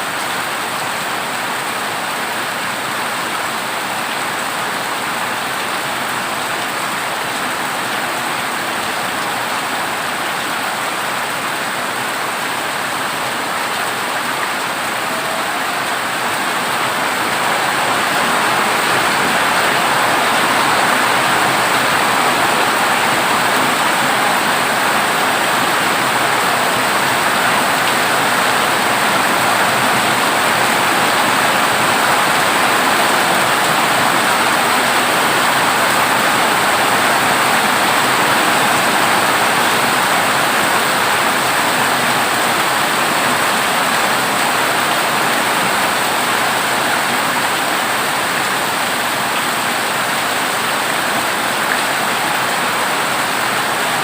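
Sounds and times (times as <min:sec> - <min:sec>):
heavy rain on a tin roof: 0:00.0 - 0:54.0.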